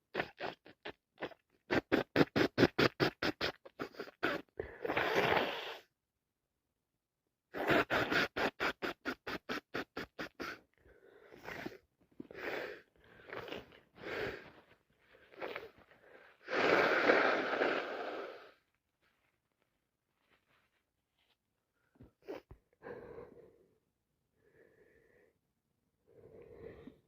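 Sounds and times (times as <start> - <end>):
person blowing nose: 0.0 - 5.9, 7.5 - 18.7, 22.2 - 23.0
person sniffling: 7.6 - 18.6, 22.1 - 23.6
heavy breaths through nose: 10.2 - 18.6.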